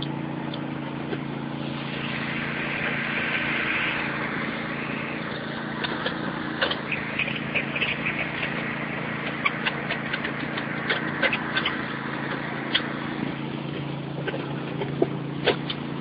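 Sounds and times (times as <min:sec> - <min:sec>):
riding lawn mower engine: 0:00.0 - 0:16.0.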